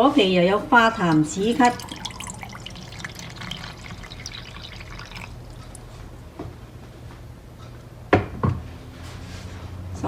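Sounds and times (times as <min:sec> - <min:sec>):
low steady hum: 0:00.0 - 0:08.1
water dripping into a sink: 0:01.0 - 0:06.2.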